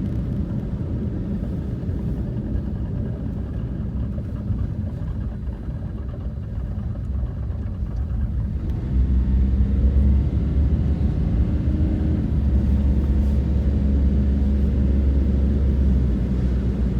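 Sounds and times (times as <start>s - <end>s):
heavy engine rumbling: 0.1s - 16.9s.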